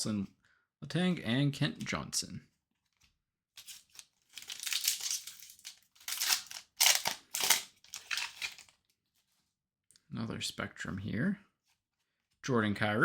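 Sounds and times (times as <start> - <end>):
wrapper tearing and crinkling: 3.6 - 8.8.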